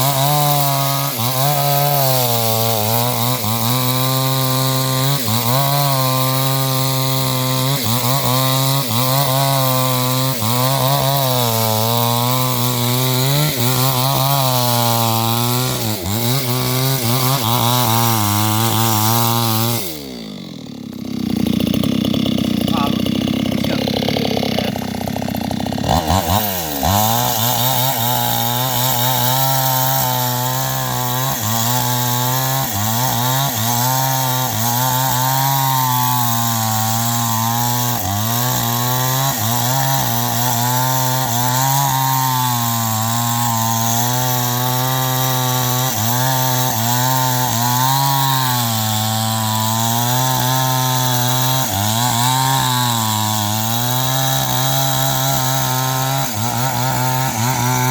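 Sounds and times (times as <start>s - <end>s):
chainsaw cutting wood: 0.0s - 57.9s.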